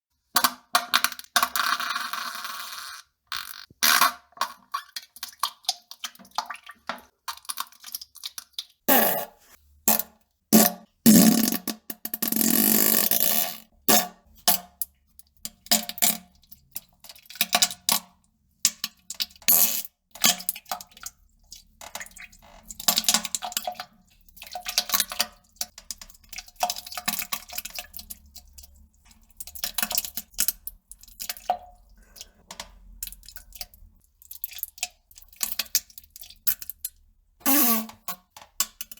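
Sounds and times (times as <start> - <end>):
fart noises: 8.9 - 14.0, 37.4 - 38.2.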